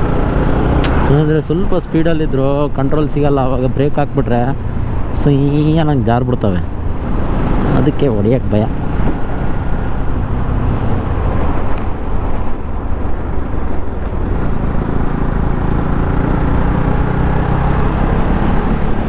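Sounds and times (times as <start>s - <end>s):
motorcycle engine: 0.0s - 1.6s, 6.7s - 19.0s.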